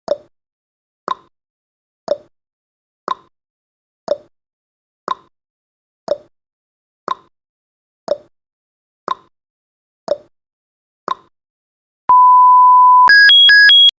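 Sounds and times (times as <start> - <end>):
steady beep: 12.1 - 14.0
two-tone electronic alarm: 12.1 - 14.0.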